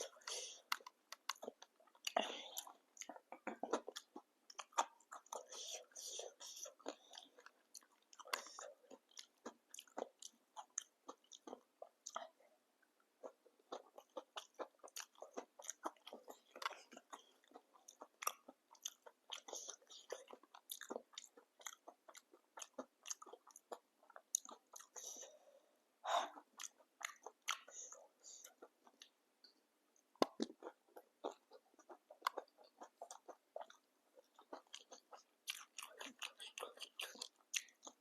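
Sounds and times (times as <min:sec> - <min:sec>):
crisp chewing crunches: 0:13.2 - 0:25.3, 0:30.2 - 0:38.0.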